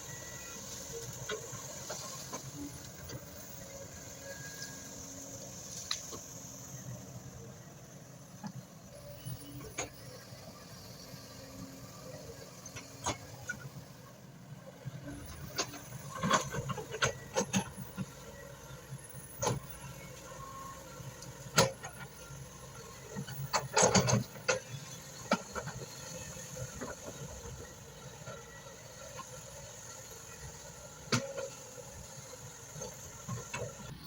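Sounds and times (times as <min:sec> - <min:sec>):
excavator engine rumble: 0:00.0 - 0:34.0.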